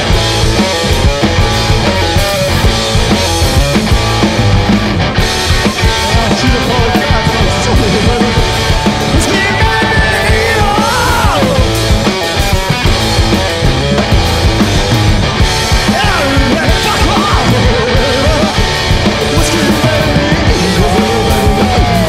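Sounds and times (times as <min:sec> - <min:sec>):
drum kit playing: 0:00.0 - 0:22.0
electric guitar: 0:00.0 - 0:22.0.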